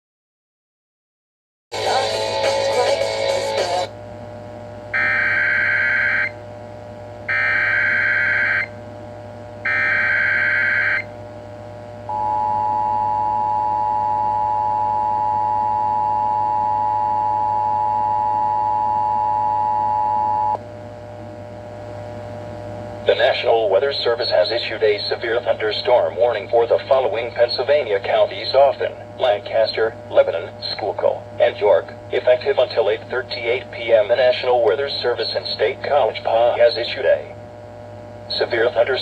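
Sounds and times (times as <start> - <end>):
radio music: 1.7 - 4.0, 23.0 - 37.4, 38.3 - 39.0
low hum: 11.0 - 39.0
two-tone attention signal: 12.1 - 20.6.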